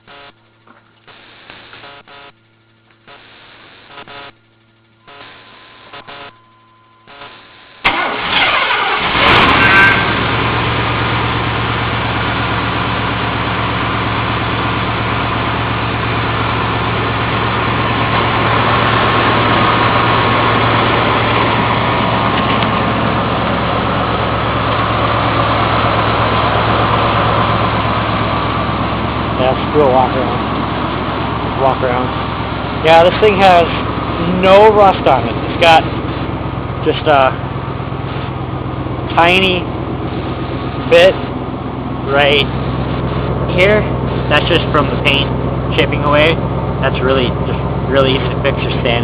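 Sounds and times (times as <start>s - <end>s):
car engine starting and idling: 7.8s - 49.0s.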